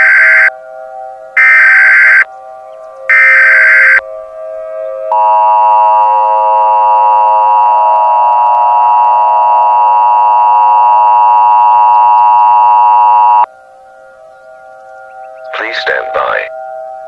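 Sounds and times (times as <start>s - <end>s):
steady electronic alert tone: 0.0s - 0.5s, 1.4s - 2.3s, 3.1s - 4.0s.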